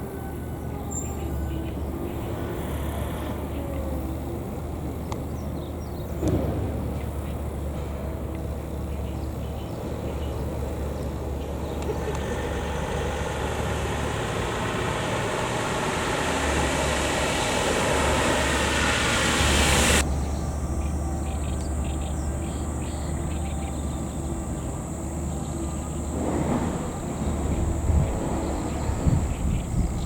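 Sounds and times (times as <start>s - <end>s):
passing vehicle: 0.0s - 30.0s
faint insect chirping: 8.4s - 26.2s.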